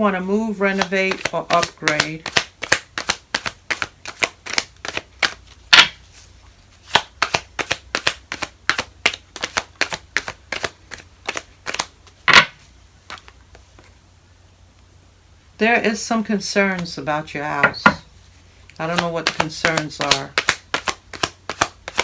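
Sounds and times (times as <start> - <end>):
cards being shuffled: 0.7 - 14.0, 16.8 - 17.0, 18.7 - 22.0.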